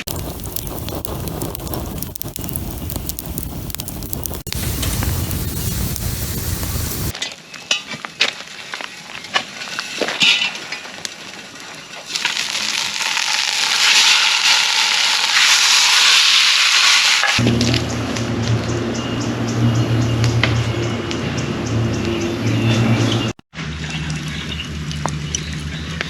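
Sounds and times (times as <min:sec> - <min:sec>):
campfire crackling and popping: 0:00.0 - 0:07.2, 0:08.0 - 0:15.9
food sizzling over fire: 0:00.0 - 0:07.2, 0:08.0 - 0:17.4.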